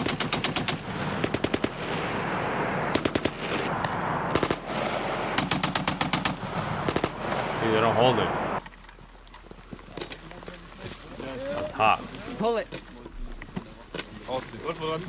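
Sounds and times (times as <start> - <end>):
machine gun bursts: 0.0 - 3.7, 4.3 - 8.6.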